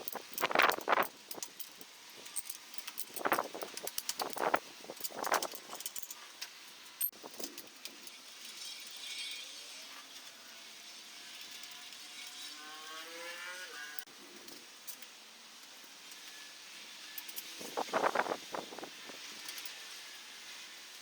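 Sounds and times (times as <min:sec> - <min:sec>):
clicks and rattles: 0:00.0 - 0:06.3.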